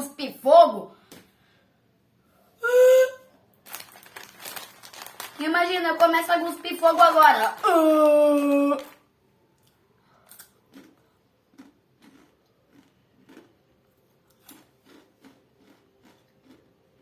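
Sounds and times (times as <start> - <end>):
chewing crunchy chips: 3.7 - 9.0, 9.6 - 17.0.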